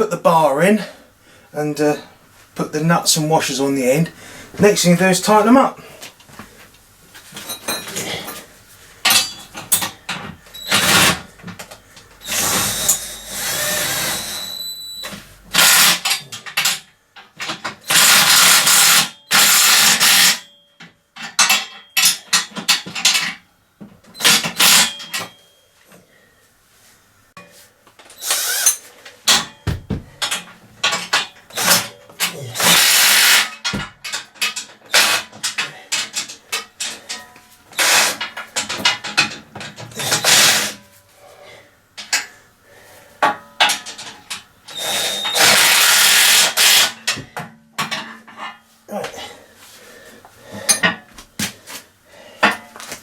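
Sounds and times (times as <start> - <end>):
metal clicks and knocks: 38.2 - 40.0.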